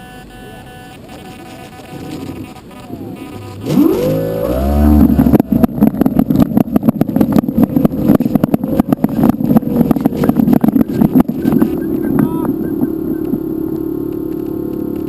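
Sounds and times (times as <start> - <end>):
model plane motor and propeller: 0.0 - 3.7
wind buffeting microphone: 4.9 - 12.9.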